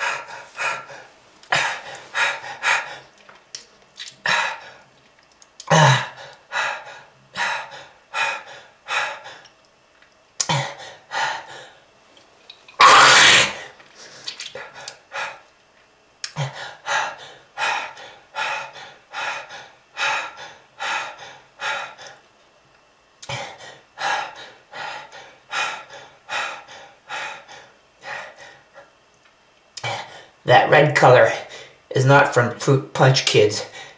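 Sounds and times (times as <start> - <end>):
person coughing: 5.7 - 6.2, 12.8 - 13.6.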